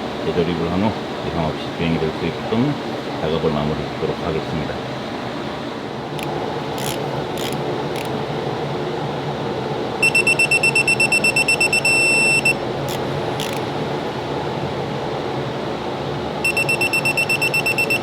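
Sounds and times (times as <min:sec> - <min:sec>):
steady hum: 0:00.0 - 0:18.0
electronic beeper beeping: 0:10.0 - 0:12.6, 0:16.4 - 0:18.0.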